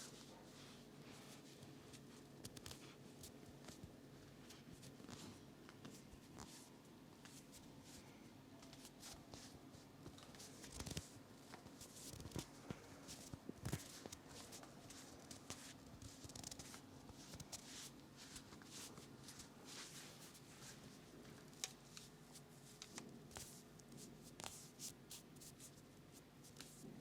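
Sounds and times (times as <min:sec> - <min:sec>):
hands rubbing hair and scalp: 0:13.0 - 0:21.0.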